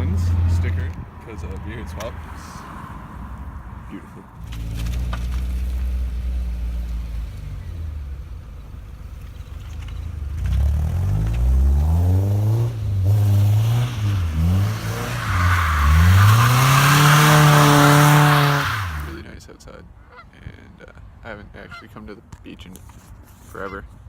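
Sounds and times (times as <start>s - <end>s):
road and wind noise: 0.0s - 24.0s
car engine accelerating: 4.4s - 19.2s.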